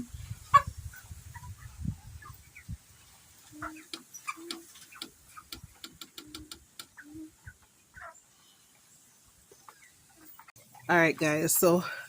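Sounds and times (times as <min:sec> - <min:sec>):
chickens clucking: 0:00.0 - 0:12.0
sharp clicks: 0:03.9 - 0:07.0.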